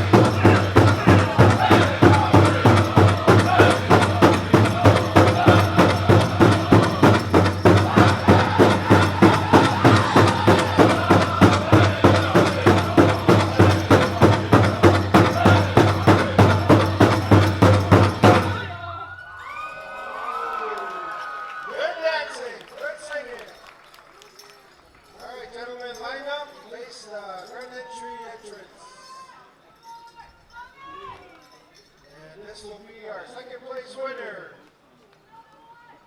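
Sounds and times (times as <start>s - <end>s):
group singing in high voices: 0.0s - 18.6s
big drum struck in unison: 0.0s - 18.8s.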